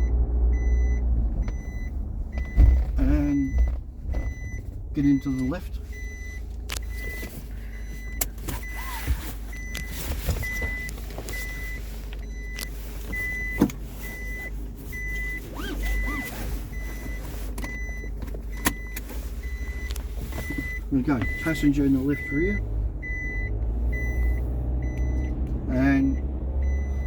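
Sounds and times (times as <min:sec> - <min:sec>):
seat-belt warning chime beeping: 0:00.0 - 0:27.0
knocks and thumps in car seat: 0:02.3 - 0:04.7.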